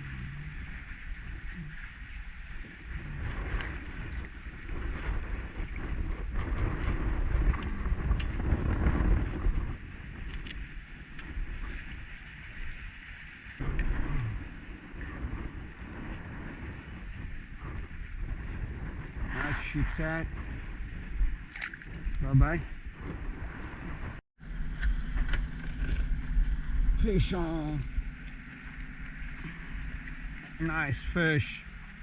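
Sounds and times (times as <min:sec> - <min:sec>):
strong wind gusting: 0:00.0 - 0:12.6, 0:13.6 - 0:32.0
water slapping against kayak hull: 0:20.4 - 0:24.0.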